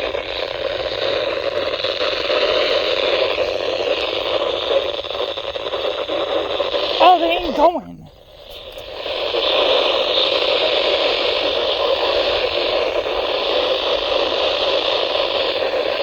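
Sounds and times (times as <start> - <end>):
radio static hiss: 5.4 - 8.7.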